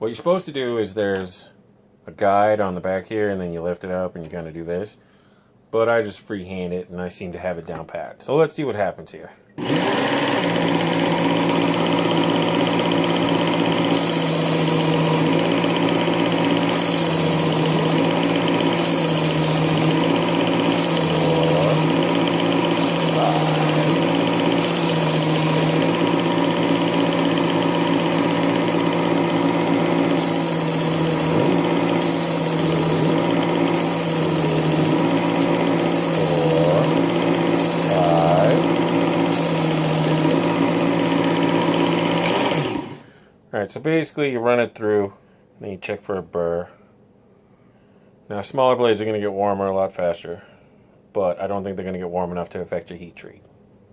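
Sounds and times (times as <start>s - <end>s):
blade grinding on abrasive belt: 9.6s - 43.0s
knife sharpener motor running: 9.6s - 43.1s.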